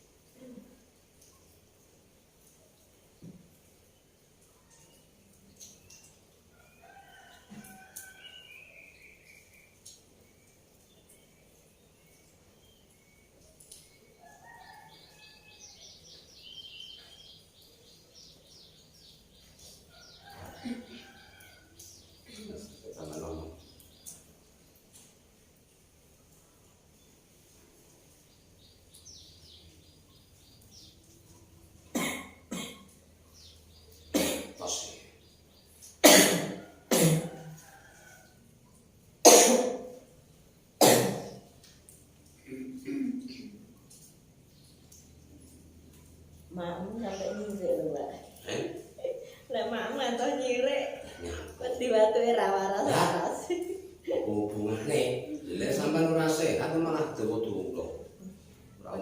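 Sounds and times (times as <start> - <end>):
small birds chirping: 0.0 - 39.2, 40.1 - 59.0
woman coughing: 36.0 - 37.3, 42.9 - 43.2.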